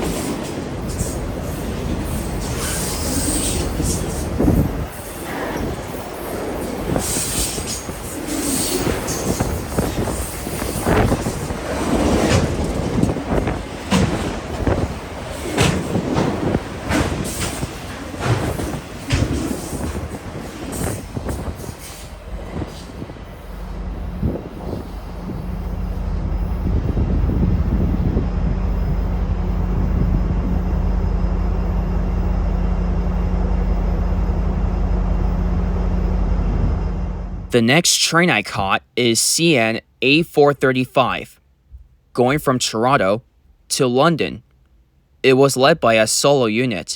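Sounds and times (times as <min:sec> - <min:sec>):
freight train wheels clicking: 0:00.0 - 0:30.9
steady low drone: 0:23.1 - 0:37.6.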